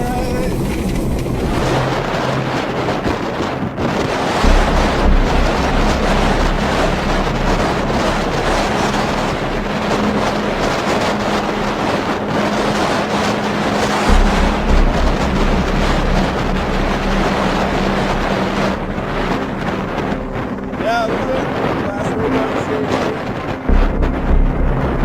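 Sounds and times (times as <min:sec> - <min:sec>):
heavy low rumble: 0:00.0 - 0:25.0
wind buffeting microphone: 0:00.0 - 0:25.0.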